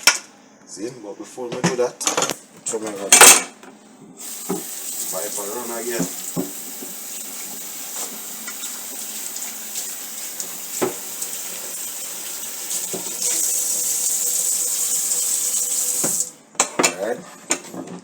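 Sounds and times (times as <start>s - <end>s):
tap water running into sink: 4.2s - 16.4s.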